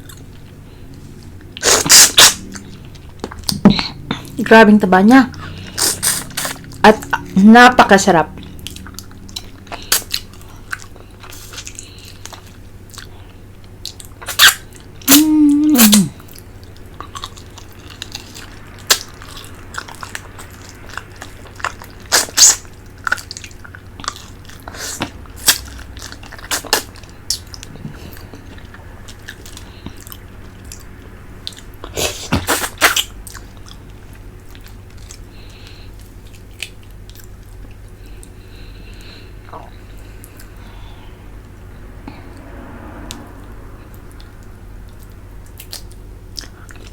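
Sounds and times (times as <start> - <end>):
chewing: 0.0 - 4.4, 5.3 - 7.4, 8.3 - 15.0, 15.9 - 41.6, 44.9 - 46.9
sucking and slurping: 0.0 - 4.4, 5.3 - 7.4, 14.0 - 34.2
lip smacks: 5.6 - 6.8.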